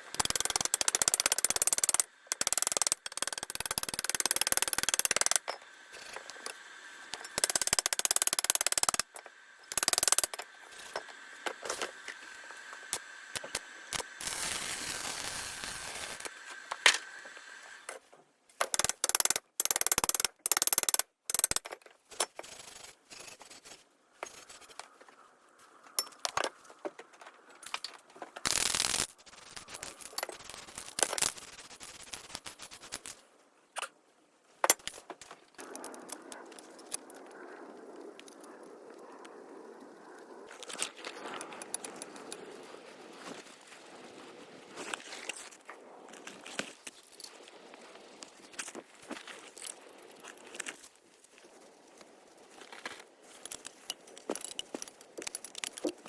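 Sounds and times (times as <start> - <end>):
hissing bursts: 12.9 - 16.6.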